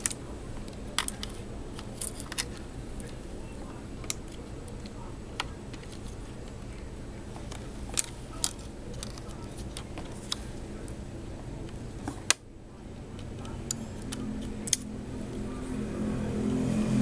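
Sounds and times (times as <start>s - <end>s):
plastic parts clicking and tapping: 0.0s - 3.2s, 4.0s - 11.0s, 13.1s - 14.9s
steady low hum: 0.0s - 17.0s.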